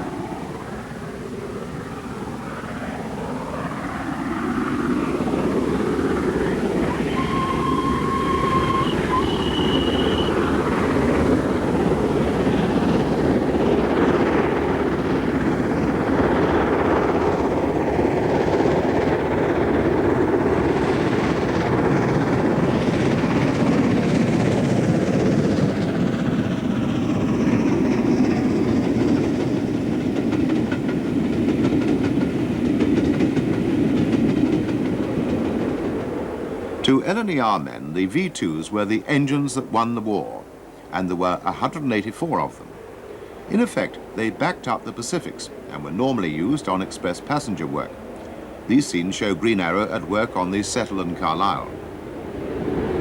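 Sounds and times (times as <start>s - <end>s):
steam locomotive running: 4.3s - 53.0s
train whistle blasts: 6.8s - 10.6s.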